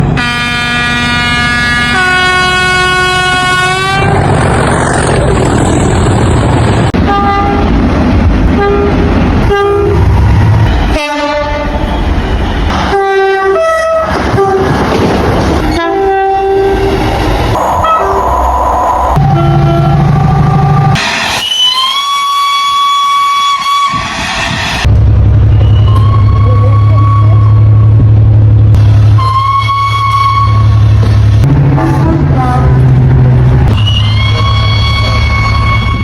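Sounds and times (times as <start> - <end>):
train rushing rumble: 0.0 - 36.0
short train horn blasts: 0.2 - 4.1
train horn chord: 0.2 - 4.1.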